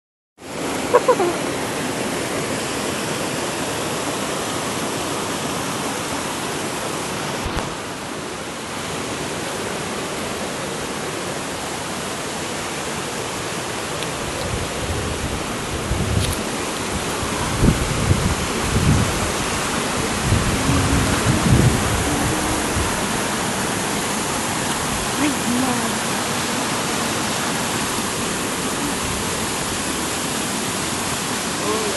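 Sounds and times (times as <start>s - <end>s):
waterfall rushing: 0.4s - 31.9s.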